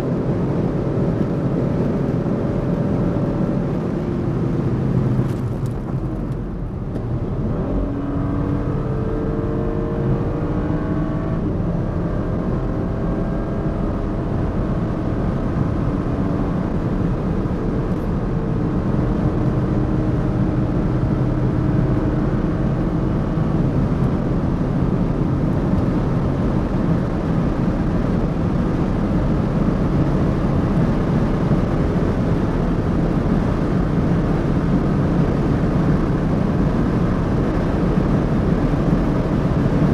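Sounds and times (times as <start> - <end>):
car engine under load: 0.0 - 39.9
wind noise: 0.0 - 39.9.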